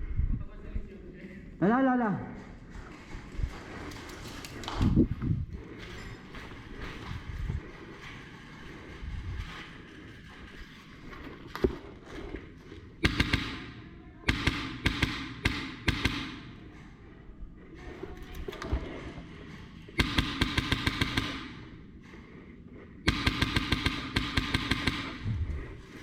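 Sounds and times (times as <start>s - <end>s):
airsoft guns firing bursts: 13.0s - 16.7s, 19.9s - 21.8s, 23.0s - 26.0s.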